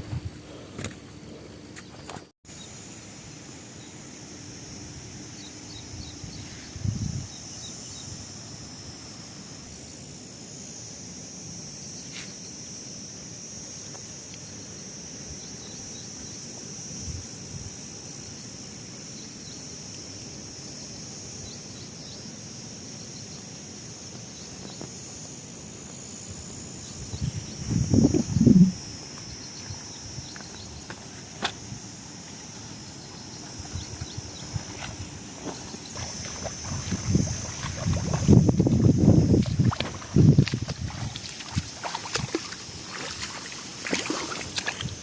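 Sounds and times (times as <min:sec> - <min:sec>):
insects droning: 0:00.0 - 0:45.0
outdoor background noise: 0:00.0 - 0:45.0.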